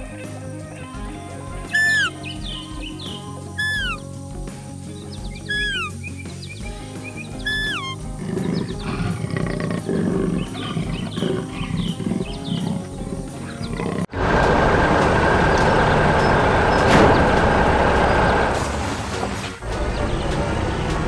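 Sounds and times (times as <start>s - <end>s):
cartoon background music: 0.0s - 13.7s
loud rushing rumble: 14.1s - 21.0s.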